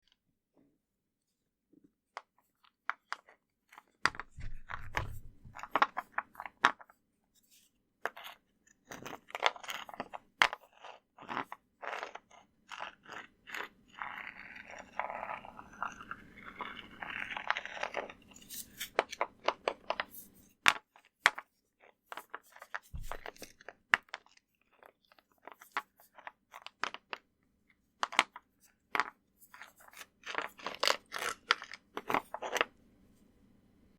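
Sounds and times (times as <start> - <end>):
concrete scraping on rock: 10.8 - 19.2.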